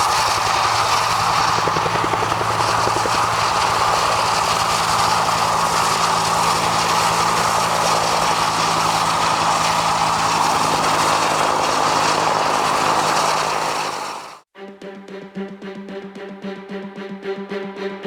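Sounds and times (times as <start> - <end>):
helicopter rotor blades chopping: 0.0 - 14.4
helicopter turbine whining: 0.0 - 14.5.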